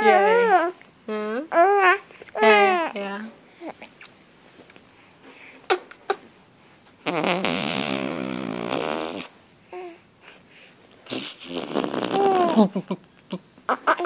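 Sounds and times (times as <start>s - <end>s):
infant blowing a raspberry: 7.0s - 9.3s, 11.1s - 12.7s
infant cooing: 11.2s - 12.7s.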